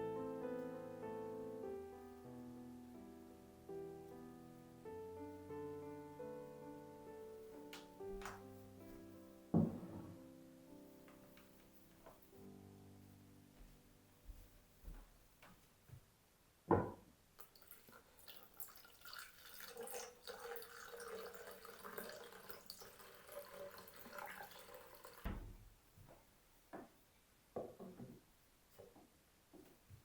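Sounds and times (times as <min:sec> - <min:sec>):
knock: 0:09.6 - 0:10.2, 0:16.7 - 0:17.0
water running from a tap: 0:17.4 - 0:25.3.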